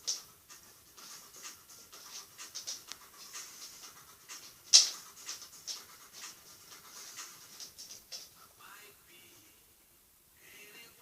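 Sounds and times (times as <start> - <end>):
dog panting: 0.0 - 8.6.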